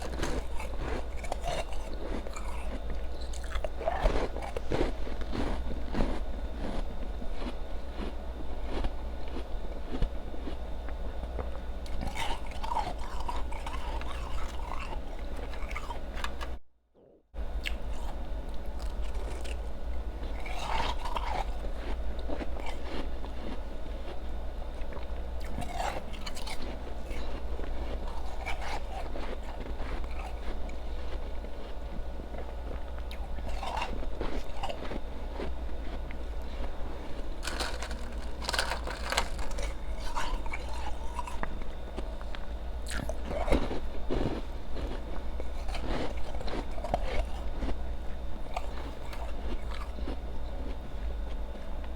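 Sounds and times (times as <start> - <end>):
chewing: 0.0 - 51.9
ice crunching: 37.1 - 41.4.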